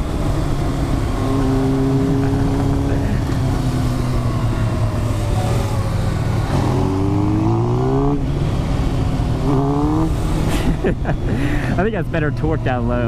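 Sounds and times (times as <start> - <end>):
motorcycle engine revving: 0.0 - 11.1.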